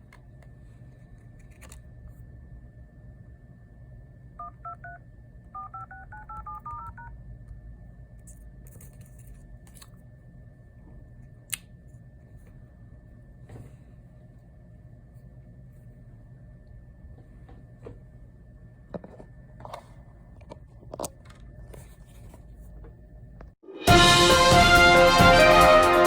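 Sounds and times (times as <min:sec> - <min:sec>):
phone keypad beeps: 0:04.4 - 0:05.0, 0:05.6 - 0:07.1.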